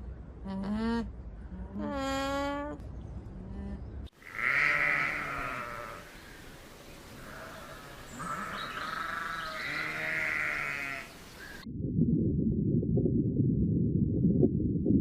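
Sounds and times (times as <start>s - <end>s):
sheep bleating: 4.2s - 6.1s, 7.2s - 11.2s.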